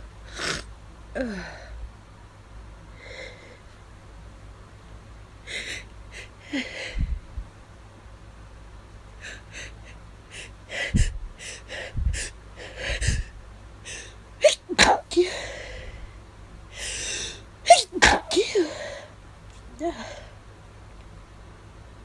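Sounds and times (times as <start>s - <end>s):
sharp gasping breaths: 9.2s - 14.2s, 15.2s - 17.5s
muffled sneezes: 14.4s - 15.4s, 17.7s - 19.0s.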